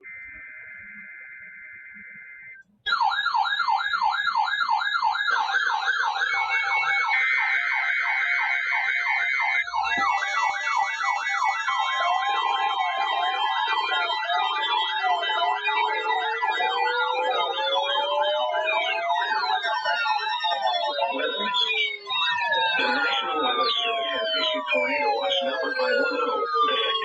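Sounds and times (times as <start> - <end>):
steady buzzy tone: 0.0 - 2.7
pulsing alarm tones: 0.0 - 27.0
warbling electronic siren: 0.0 - 27.0.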